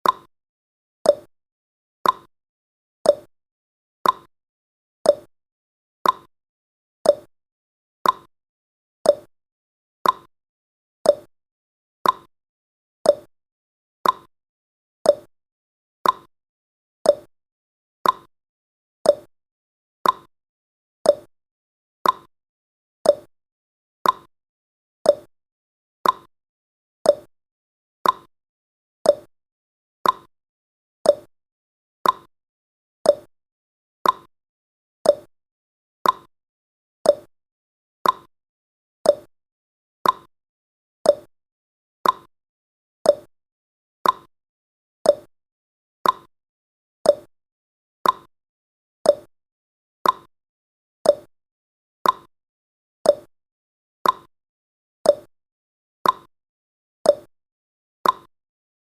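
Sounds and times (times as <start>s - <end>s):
timer ticking: 0.0s - 0.3s, 1.1s - 1.3s, 2.0s - 2.3s, 3.1s - 3.3s, 4.0s - 4.3s, 5.1s - 5.3s, 6.0s - 6.3s, 7.1s - 7.3s, 8.0s - 8.3s, 9.1s - 9.3s, 10.0s - 10.3s, 11.1s - 11.3s, 12.0s - 12.3s, 13.1s - 13.3s, 14.0s - 14.3s, 15.1s - 15.3s, 16.0s - 16.3s, 17.1s - 17.3s, 18.0s - 18.3s, 19.1s - 19.3s, 20.0s - 20.3s, 21.1s - 21.3s, 22.0s - 22.3s, 23.0s - 23.3s, 24.0s - 24.3s, 25.1s - 25.3s, 26.0s - 26.3s, 27.1s - 27.3s, 28.0s - 28.3s, 29.0s - 29.3s, 30.0s - 30.3s, 31.1s - 31.3s, 32.0s - 32.3s, 33.1s - 33.3s, 34.0s - 34.3s, 35.0s - 35.3s, 36.0s - 36.3s, 37.1s - 37.3s, 38.0s - 38.3s, 39.1s - 39.3s, 40.0s - 40.3s, 41.1s - 41.3s, 42.0s - 42.3s, 43.1s - 43.3s, 44.0s - 44.3s, 45.1s - 45.3s, 46.0s - 46.3s, 47.1s - 47.3s, 48.0s - 48.3s, 49.1s - 49.3s, 50.0s - 50.3s, 51.1s - 51.3s, 52.0s - 52.3s, 53.1s - 53.3s, 54.0s - 54.3s, 55.1s - 55.3s, 56.0s - 56.3s, 57.1s - 57.3s, 58.0s - 58.3s.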